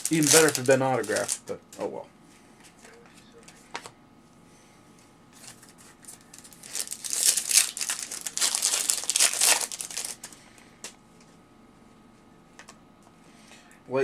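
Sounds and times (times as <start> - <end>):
foil wrapper crinkling and tearing: 0.0 - 1.6, 5.4 - 10.4.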